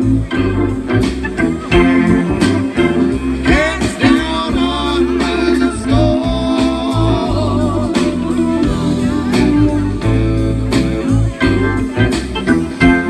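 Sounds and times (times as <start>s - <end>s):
bass and drums: 0.0s - 13.0s
electric guitar bending notes: 0.0s - 13.0s
person singing: 2.0s - 11.2s.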